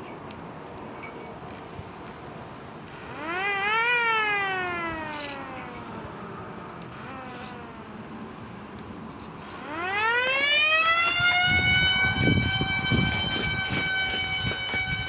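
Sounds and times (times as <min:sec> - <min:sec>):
miniature siren winding up and down: 0:03.0 - 0:06.2, 0:06.8 - 0:08.0.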